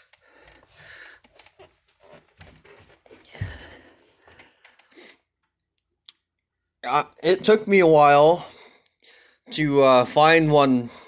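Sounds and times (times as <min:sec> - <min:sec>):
rustling and handling clicks: 0:04.2 - 0:05.9.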